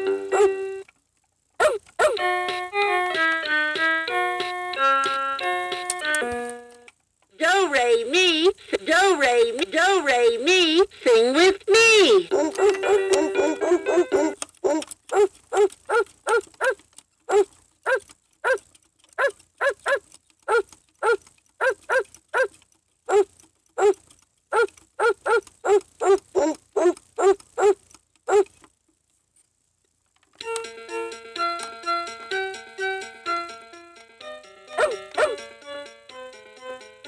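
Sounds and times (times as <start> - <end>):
toy speaker playing yipping tune: 0.0 - 0.9, 7.6 - 15.2, 34.4 - 35.7.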